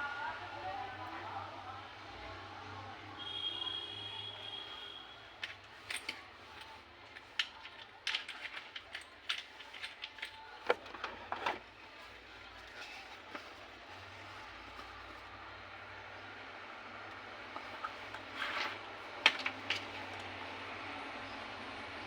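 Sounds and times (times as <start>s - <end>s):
clicks and clinks of tools: 5.4s - 11.6s.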